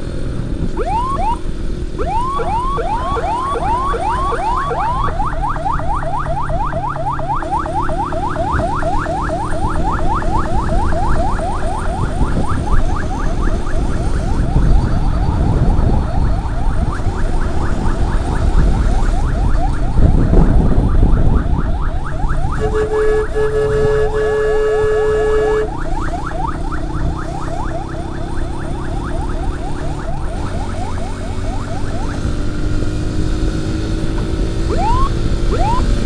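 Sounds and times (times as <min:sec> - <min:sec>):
wind and engine rumble: 0:00.0 - 0:36.0
emergency siren yelping: 0:00.6 - 0:36.0
steady horn tone: 0:22.5 - 0:25.8.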